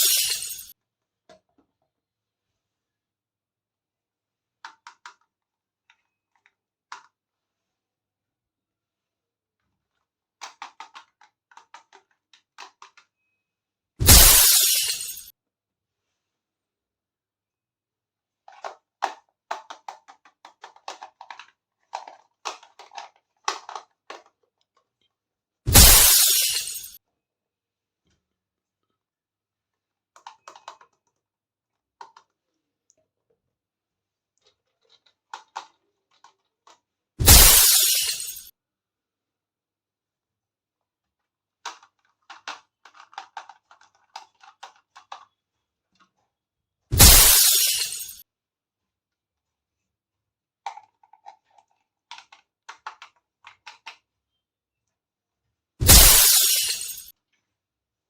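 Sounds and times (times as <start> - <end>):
plastic toy pieces clicking: 10.4 - 13.1, 18.4 - 25.0, 30.1 - 31.2, 34.4 - 36.8, 41.6 - 45.3, 50.7 - 54.1
loud crash-like burst: 14.0 - 14.9, 25.7 - 26.4, 37.2 - 37.8, 47.0 - 47.7, 55.8 - 56.6.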